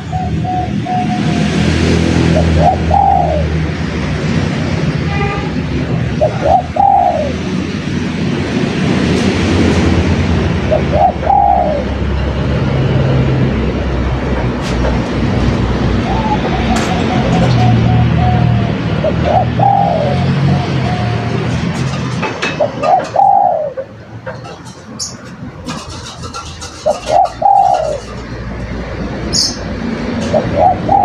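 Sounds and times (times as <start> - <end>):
dove cooing: 0.0 - 1.5, 2.3 - 3.6, 6.1 - 7.8, 10.6 - 12.1, 14.4 - 31.0.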